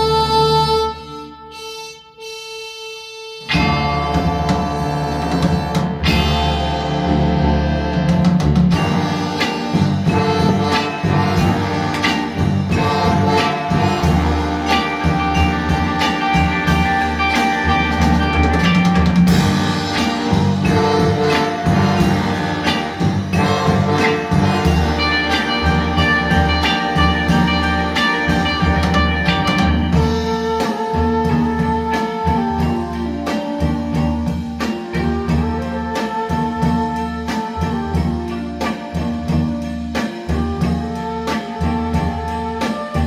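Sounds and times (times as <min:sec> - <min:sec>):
drums: 0:00.0 - 0:43.0
guitar: 0:00.0 - 0:43.0
instrumental music over loudspeakers: 0:00.0 - 0:43.0
pulsing bass line: 0:03.5 - 0:30.2.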